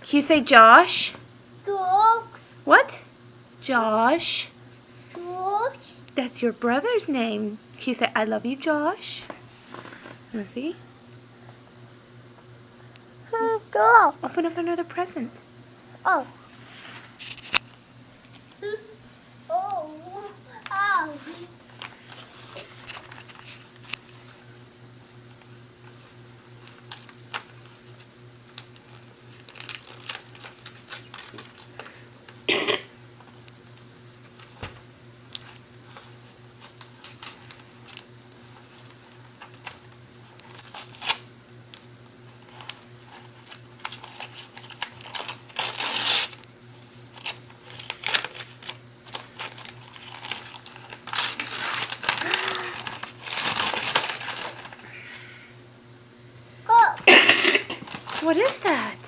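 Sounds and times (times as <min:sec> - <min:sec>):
faint steady hum: 0:00.0 - 0:59.0
wrapping paper tearing and crumpling: 0:20.7 - 0:24.2, 0:26.6 - 0:32.0, 0:35.3 - 0:41.3, 0:42.3 - 0:46.4, 0:47.1 - 0:55.3, 0:57.1 - 0:59.0.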